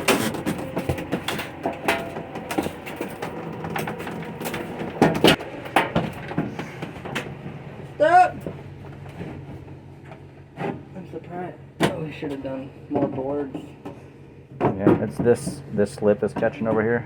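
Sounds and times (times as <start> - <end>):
wooden boards cracking and creaking: 0.0 - 7.4.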